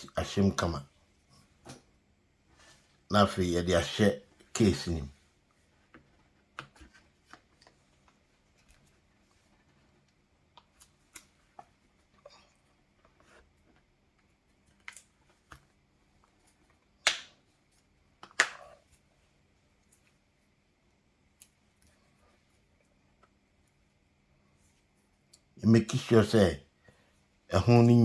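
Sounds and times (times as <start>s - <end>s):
plastic phone case clicks and rubs: 18.2s - 19.0s.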